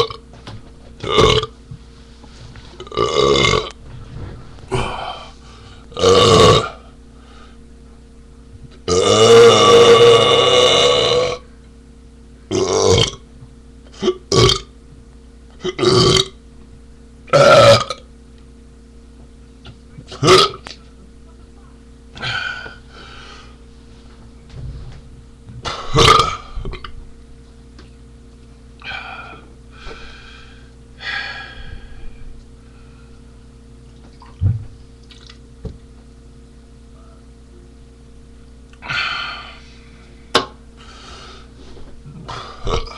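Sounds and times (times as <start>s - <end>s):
man belching: 0.0s - 0.2s, 1.0s - 1.5s, 2.8s - 3.8s, 5.9s - 6.8s, 8.9s - 11.4s, 12.5s - 13.2s, 13.9s - 14.7s, 15.6s - 16.4s, 17.3s - 18.1s, 20.1s - 20.6s, 25.7s - 26.9s, 42.1s - 42.9s
steady background hum: 0.0s - 42.9s
man gasping breaths: 28.8s - 33.2s, 38.8s - 40.1s.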